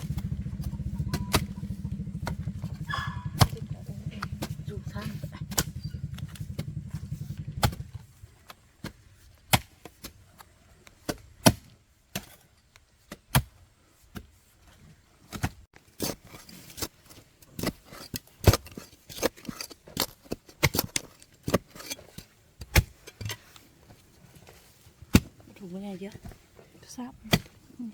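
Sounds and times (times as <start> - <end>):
hand tool chopping wood: 2.2 - 6.6, 7.5 - 12.5, 13.1 - 14.3, 25.1 - 25.5, 27.2 - 27.7.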